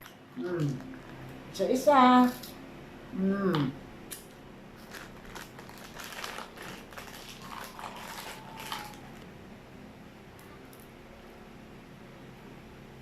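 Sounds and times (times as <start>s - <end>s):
plastic packaging crinkling: 4.8s - 9.3s.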